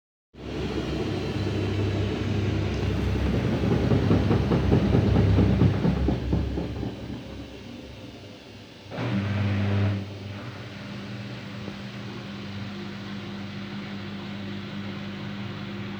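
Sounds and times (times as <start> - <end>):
hiss and hum: 0.4 - 15.9
washing machine spinning unbalanced: 1.8 - 8.0
drum knocking: 2.4 - 8.0.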